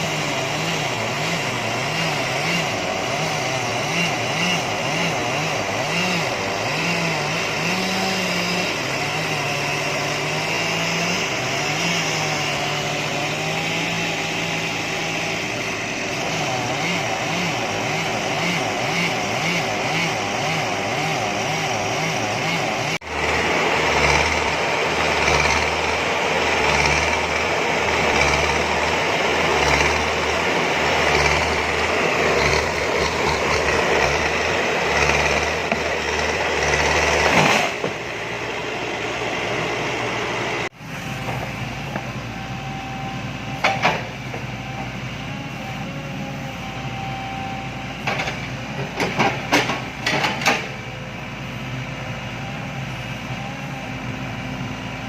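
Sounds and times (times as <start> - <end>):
engine throbbing: 0.0 - 42.2
engine humming: 0.0 - 55.0
engine with wavering pitch: 0.0 - 55.0.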